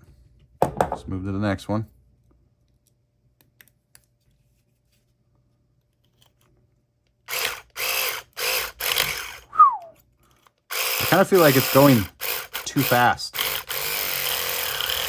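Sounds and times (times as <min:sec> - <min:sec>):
electric saw buzzing: 0:07.3 - 0:09.5, 0:10.7 - 0:15.0
short falling squeal: 0:09.5 - 0:10.0.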